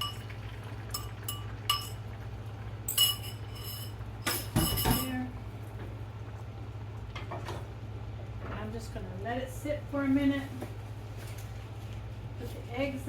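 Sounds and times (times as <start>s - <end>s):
fork clinking against glass bowl: 0.0s - 0.3s, 0.9s - 2.0s, 2.9s - 5.1s.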